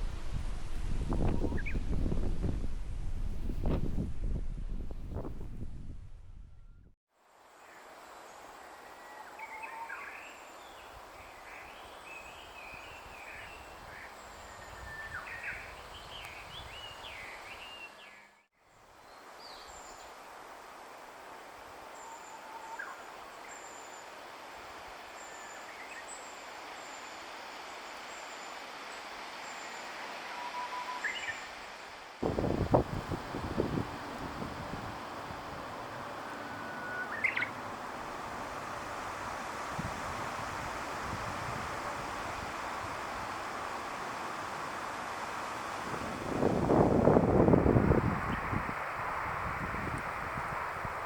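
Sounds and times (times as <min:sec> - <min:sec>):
birds chirping and warbling: 0:01.4 - 0:01.9, 0:35.9 - 0:37.8
outdoor background hiss: 0:07.1 - 0:51.0.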